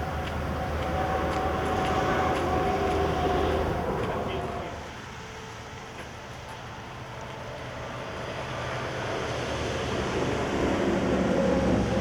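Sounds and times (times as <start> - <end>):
vehicle approaching: 0.0 - 4.9.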